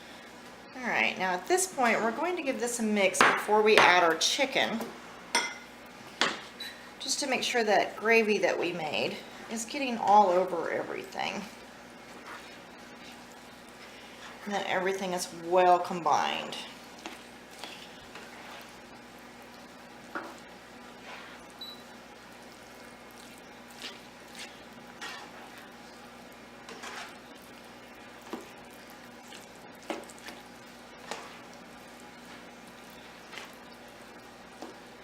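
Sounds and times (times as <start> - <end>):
utensil stirring thick mixture: 9.5 - 35.0.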